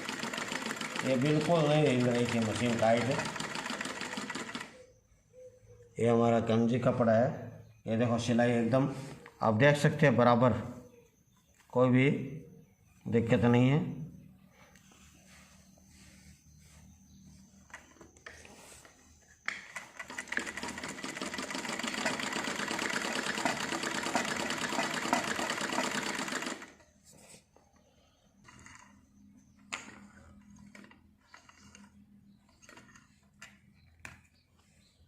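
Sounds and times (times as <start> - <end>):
sewing machine stitching: 0.0 - 4.8, 19.7 - 26.8.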